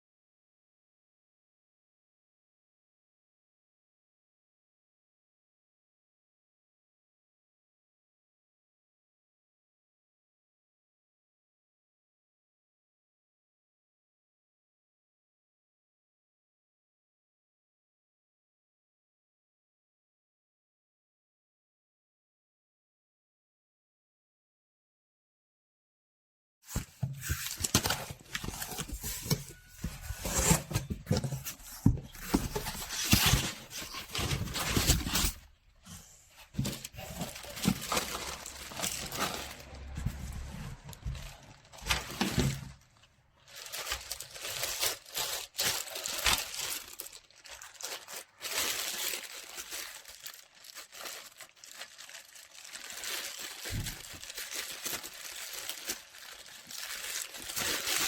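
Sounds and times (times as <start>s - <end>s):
crinkling and rustling: 26.7s - 58.0s.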